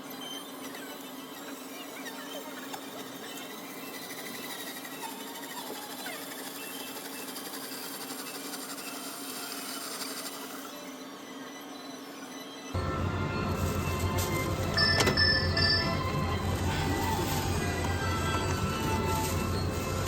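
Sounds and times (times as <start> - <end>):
steady mechanical hum: 0.0 - 20.0
music: 12.7 - 20.0.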